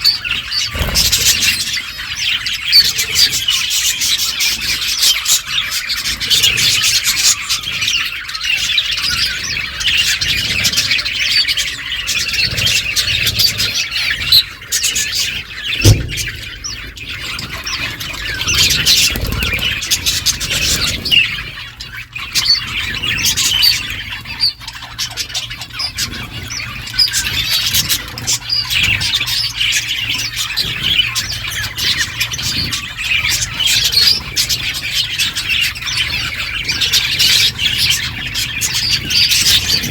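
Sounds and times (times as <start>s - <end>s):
budgerigars chattering and chirping: 0.0s - 39.9s
short thump: 15.8s - 16.5s.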